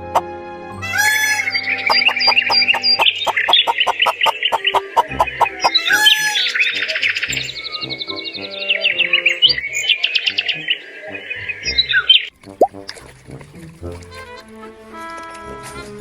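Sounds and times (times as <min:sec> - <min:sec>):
chickens cheeping and clucking: 0:00.0 - 0:12.3
light background music: 0:00.0 - 0:16.0.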